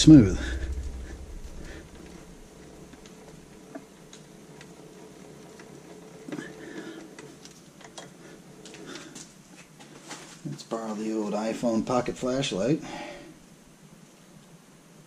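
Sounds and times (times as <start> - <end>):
low steady hum: 0.0 - 7.3.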